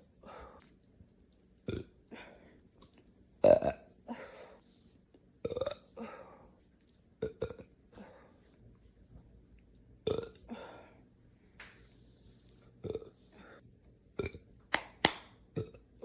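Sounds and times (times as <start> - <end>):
woman burping: 3.4 - 4.2, 5.4 - 5.9, 10.0 - 10.6.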